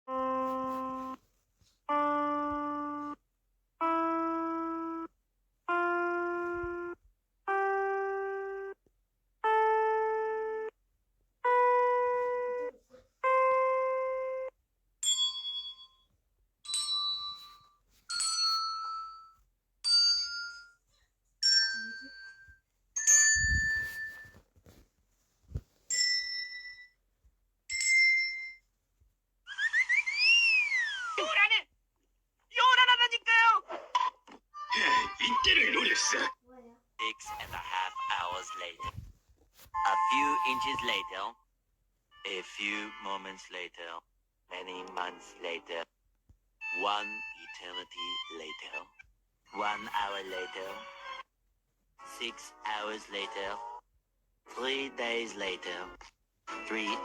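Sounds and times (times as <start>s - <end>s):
high ringing dings: 15.0s - 20.8s, 21.4s - 24.3s, 25.9s - 27.0s, 27.7s - 28.6s
sustained musical tones: 39.8s - 41.2s.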